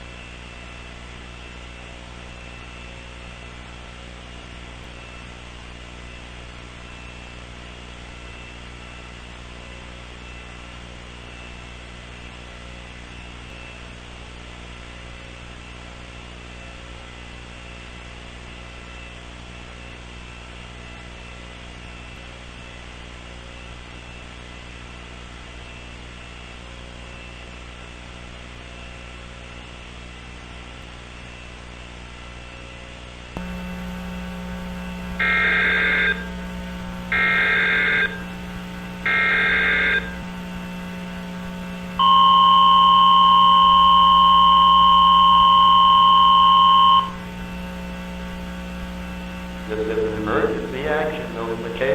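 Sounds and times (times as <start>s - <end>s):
electrical hum: 33.3s - 51.9s
low buzz: 33.4s - 51.9s
static hiss: 33.4s - 51.9s
steady held tones: 33.4s - 51.9s.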